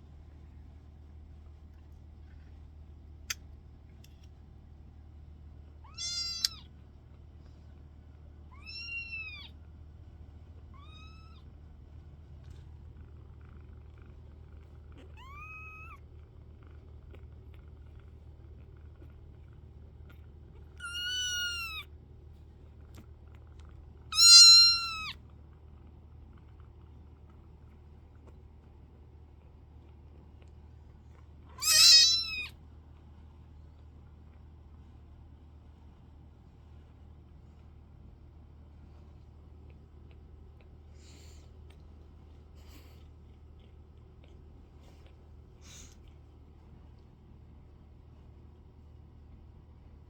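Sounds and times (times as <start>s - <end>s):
kittens meowing: 5.9s - 6.7s, 8.5s - 9.5s, 10.8s - 11.4s, 15.0s - 16.0s, 20.8s - 21.9s, 24.1s - 25.2s, 31.5s - 32.6s.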